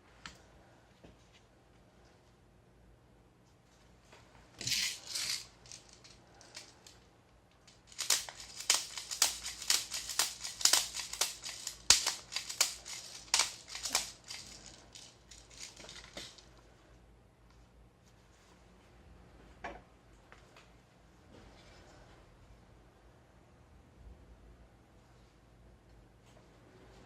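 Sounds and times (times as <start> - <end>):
metallic clacks and rattles: 7.7 - 16.4.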